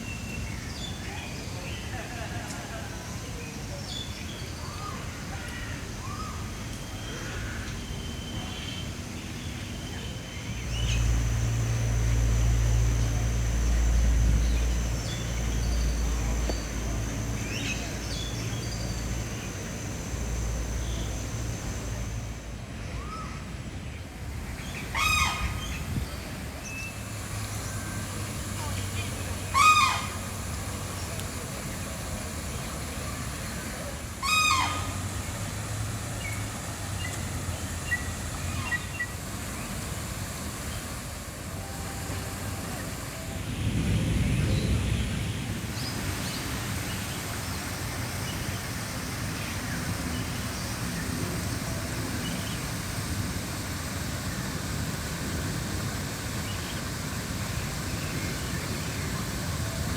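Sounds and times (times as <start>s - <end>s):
low background hum: 4.7s - 59.9s
bird call: 24.6s - 31.2s, 34.2s - 35.2s.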